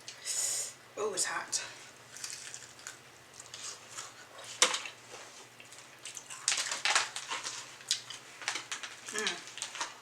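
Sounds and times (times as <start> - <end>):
crunchy chewing: 2.1 - 4.5.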